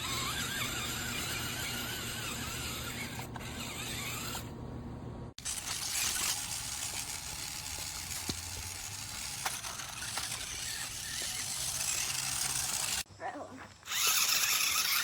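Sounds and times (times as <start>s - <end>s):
motor and gears humming: 0.0s - 13.2s, 13.8s - 15.0s
tyres crunching in sand: 5.4s - 13.1s.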